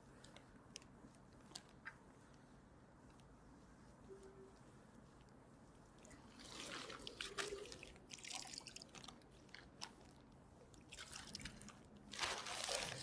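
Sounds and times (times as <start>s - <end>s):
crackly clicks and scrapes: 0.1s - 2.5s.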